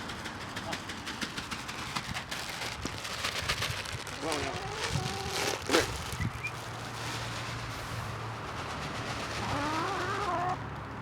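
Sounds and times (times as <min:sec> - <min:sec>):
chickens clucking: 0:09.4 - 0:10.6
wavering hen calls: 0:09.4 - 0:10.6.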